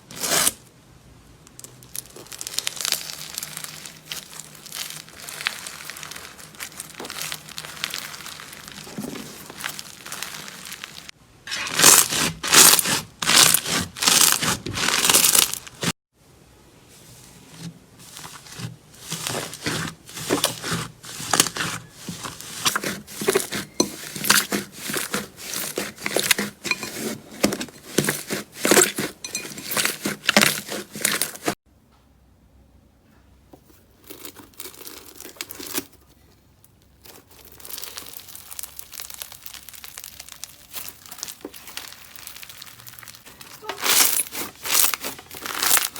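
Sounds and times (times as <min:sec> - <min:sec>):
slime crackling and popping: 0:01.5 - 0:15.9, 0:37.1 - 0:45.9.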